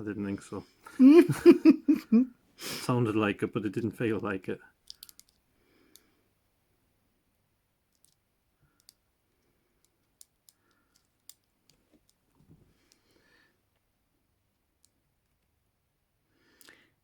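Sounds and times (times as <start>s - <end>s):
metallic clicks in handcuff lock: 4.8s - 5.4s.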